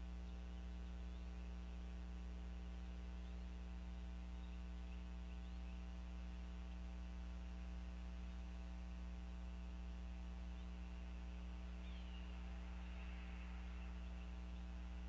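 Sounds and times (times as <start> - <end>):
electrical mains hum: 0.0 - 15.0
faint high chirps: 10.4 - 15.0.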